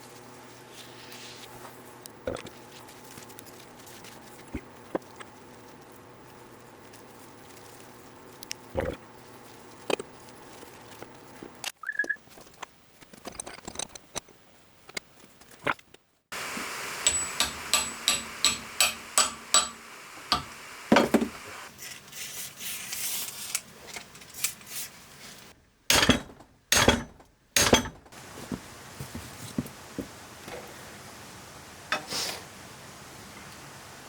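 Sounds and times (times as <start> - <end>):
hammer blows on metal: 16.8 - 21.2.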